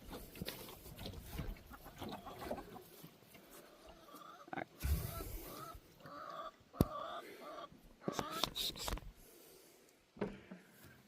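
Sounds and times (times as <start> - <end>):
hens clucking: 0.0 - 8.8.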